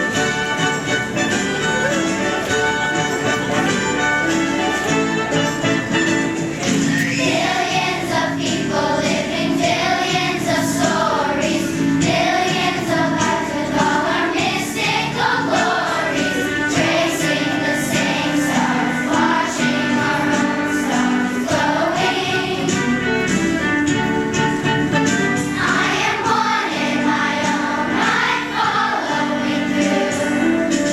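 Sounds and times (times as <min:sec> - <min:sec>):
instrumental accompaniment: 0:00.0 - 0:30.9
choir singing: 0:07.0 - 0:23.3, 0:25.4 - 0:30.9.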